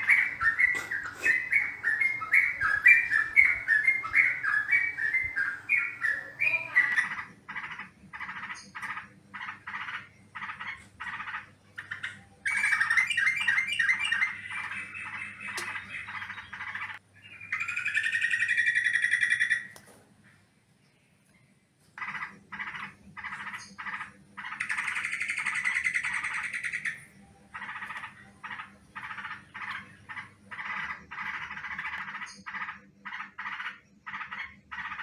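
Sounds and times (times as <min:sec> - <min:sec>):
bulbul singing chattering phrases: 0:00.0 - 0:07.2.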